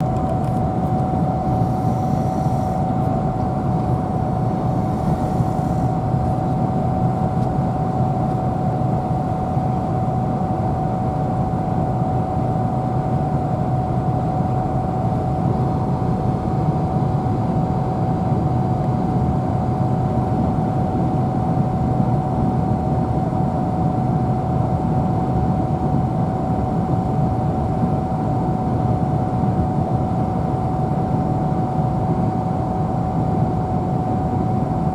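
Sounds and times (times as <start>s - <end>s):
thin steady whine: 0.0s - 10.4s
road and engine noise inside car: 0.0s - 12.6s.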